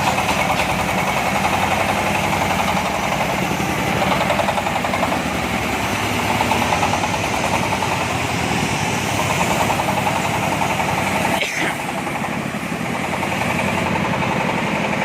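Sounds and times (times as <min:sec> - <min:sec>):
diesel engine chugging: 0:00.0 - 0:15.0.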